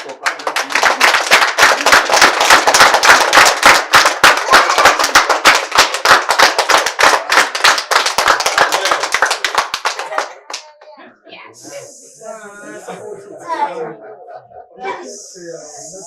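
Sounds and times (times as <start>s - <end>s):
people clapping: 0.0s - 11.0s.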